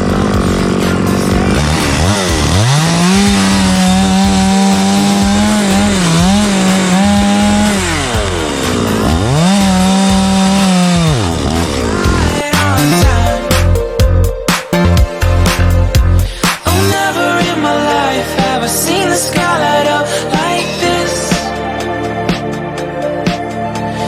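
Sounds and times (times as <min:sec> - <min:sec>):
chainsaw revving: 0:00.0 - 0:13.8.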